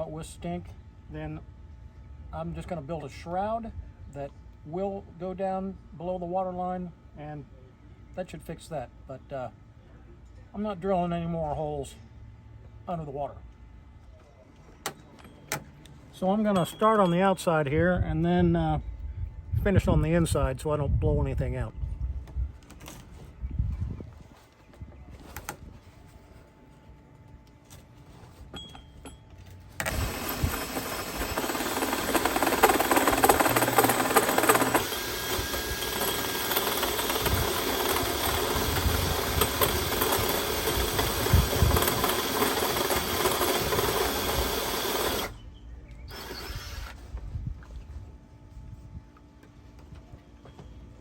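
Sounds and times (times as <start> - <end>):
power drill grinding: 29.8 - 45.4, 46.1 - 47.0.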